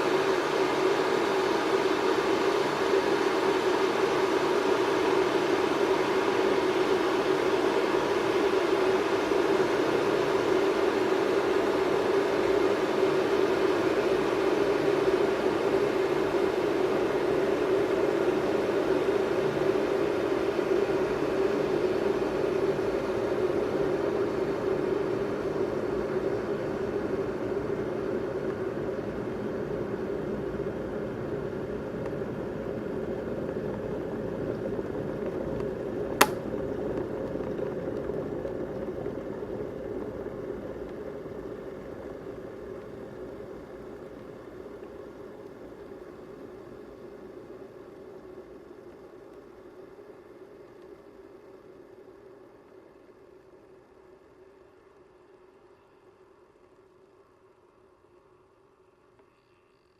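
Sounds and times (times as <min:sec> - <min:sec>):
kettle rumbling and bubbling: 0:00.0 - 0:59.9
kettle switch click: 0:36.2 - 0:36.4.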